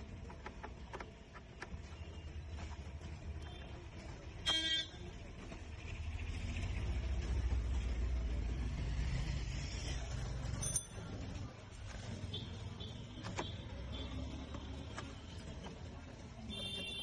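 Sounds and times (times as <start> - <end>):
vehicle engine rumble: 0.0 - 16.8
vehicle horn toot: 4.4 - 5.0, 16.5 - 17.0.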